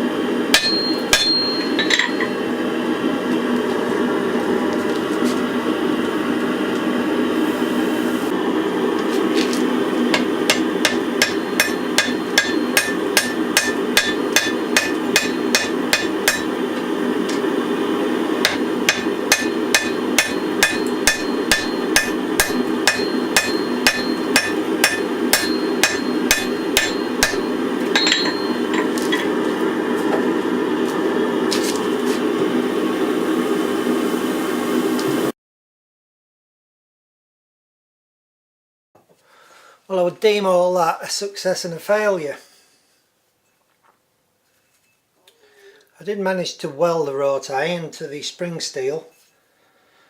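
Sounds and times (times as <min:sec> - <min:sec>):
hammer striking metal on anvil: 0:00.5 - 0:02.4, 0:10.1 - 0:16.6, 0:18.4 - 0:29.3.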